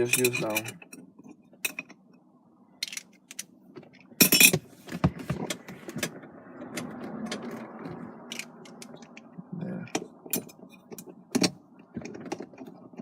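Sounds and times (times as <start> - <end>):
metal socket clinking and rattling: 2.8 - 3.5.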